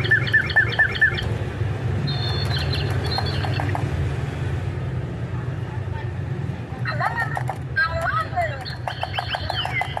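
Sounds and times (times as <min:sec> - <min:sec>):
lovebirds chirping: 0:02.0 - 0:03.9, 0:08.4 - 0:10.0.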